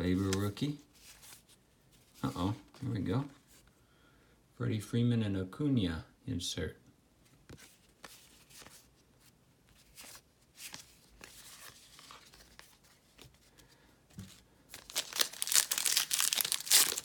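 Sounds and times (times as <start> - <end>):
cards rustling and tapping: 9.8 - 17.0
plastic wrapper crinkling: 14.7 - 17.0.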